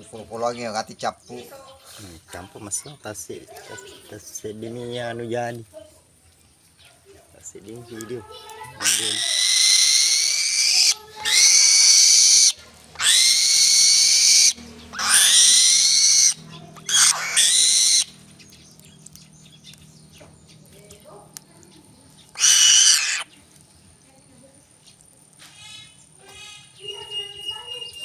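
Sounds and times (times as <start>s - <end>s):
bird of prey screeching: 8.8s - 18.2s, 22.3s - 23.3s.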